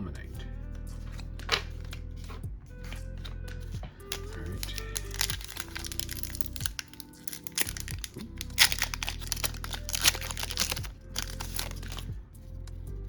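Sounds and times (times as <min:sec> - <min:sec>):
background music: 0:00.0 - 0:13.0
foil wrapper crinkling and tearing: 0:04.1 - 0:12.1.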